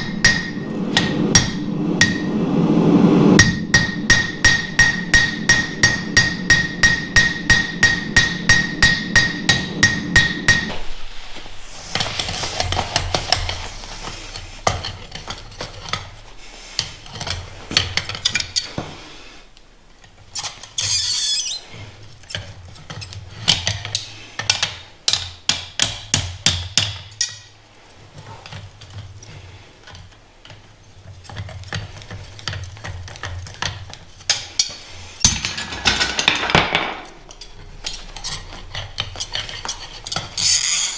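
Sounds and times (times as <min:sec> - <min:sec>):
hammer striking steel on anvil: 0:00.0 - 0:02.2, 0:03.4 - 0:10.9
brief hiss: 0:10.7 - 0:14.9.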